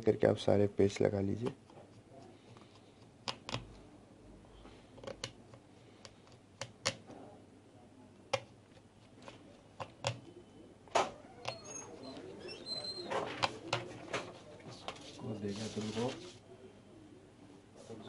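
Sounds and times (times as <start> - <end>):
small plastic parts clicking: 2.6 - 3.8, 5.0 - 7.0, 9.8 - 10.3.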